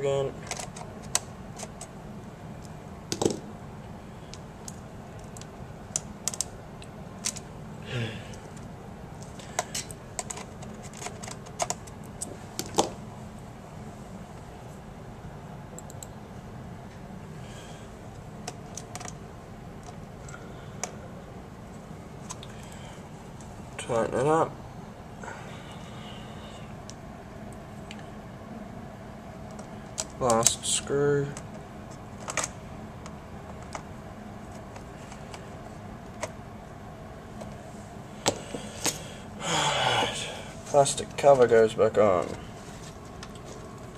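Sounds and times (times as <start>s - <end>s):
steady low hum: 0.0s - 43.9s.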